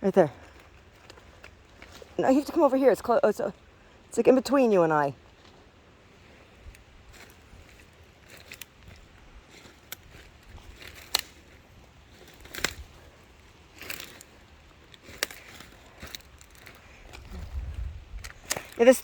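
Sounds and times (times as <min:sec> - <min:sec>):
footsteps crunching on leaf litter: 0:05.2 - 0:19.0.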